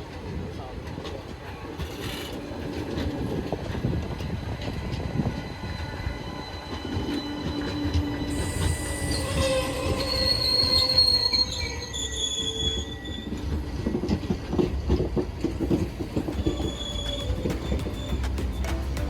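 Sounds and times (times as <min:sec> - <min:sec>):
wheels clattering over rail joints: 0:00.0 - 0:05.4, 0:11.4 - 0:19.0
train rumbling on rails: 0:00.0 - 0:19.0
train wheels squealing: 0:01.8 - 0:14.1, 0:15.7 - 0:18.6.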